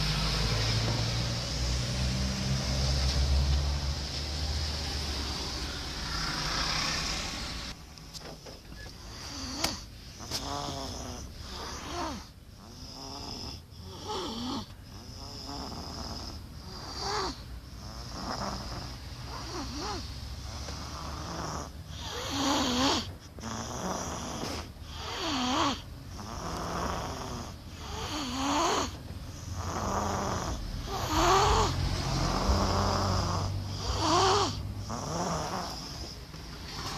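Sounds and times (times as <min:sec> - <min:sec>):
low car hum: 0:00.0 - 0:09.1, 0:28.9 - 0:36.9
child snoring: 0:04.4 - 0:07.8, 0:08.7 - 0:36.9.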